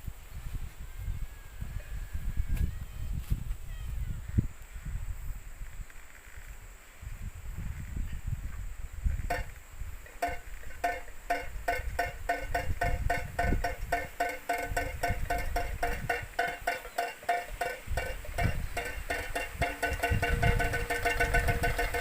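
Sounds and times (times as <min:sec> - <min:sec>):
windmill clacking: 0:09.3 - 0:22.0.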